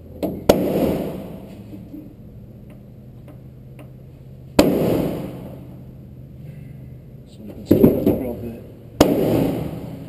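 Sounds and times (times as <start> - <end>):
punch striking metal: 0.4 - 1.5, 4.6 - 5.7, 9.0 - 10.0.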